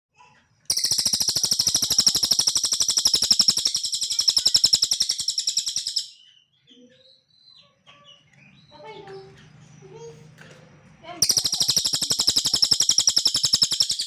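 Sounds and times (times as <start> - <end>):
songbird trilling: 0.7 - 6.2, 11.2 - 14.0.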